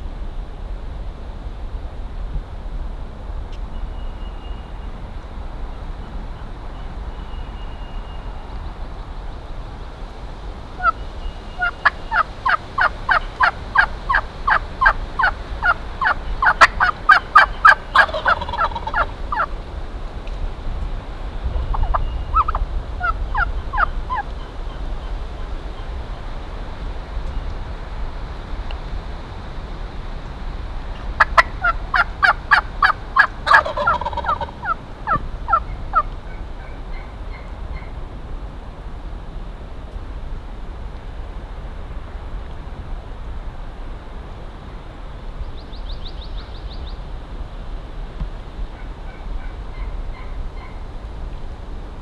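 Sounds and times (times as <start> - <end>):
wind rumble on microphone: 0.0 - 52.0
turkey yelping: 10.8 - 19.5, 21.7 - 25.1, 30.9 - 37.9, 48.8 - 50.8.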